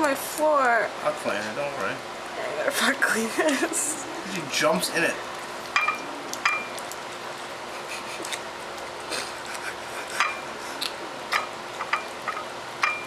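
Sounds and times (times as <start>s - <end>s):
food dish clicking and clinking: 11.3s - 13.0s.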